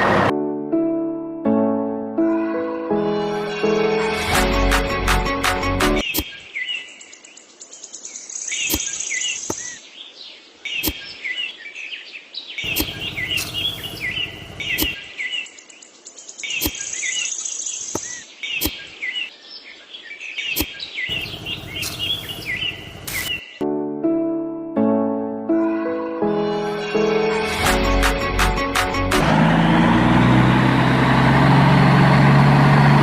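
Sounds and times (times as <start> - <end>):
birds chirping and calling: 6.0 - 23.6.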